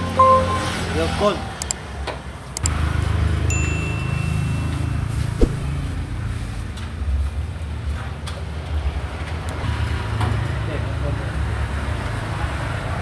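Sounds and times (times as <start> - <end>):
thin high-pitched tone: 0.0 - 1.4.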